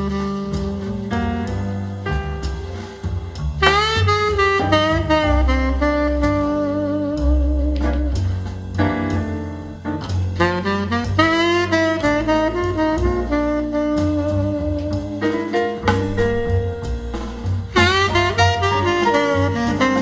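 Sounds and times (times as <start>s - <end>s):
saxophone lead: 0.0s - 1.6s, 3.6s - 8.3s, 10.4s - 20.0s
bass: 0.0s - 20.0s
light drums: 0.0s - 20.0s.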